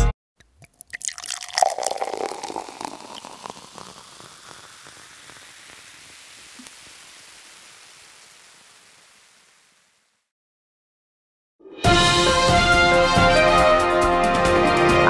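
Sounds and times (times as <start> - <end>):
water pouring and splashing: 0.4 - 10.2
faint hiss: 1.7 - 10.3.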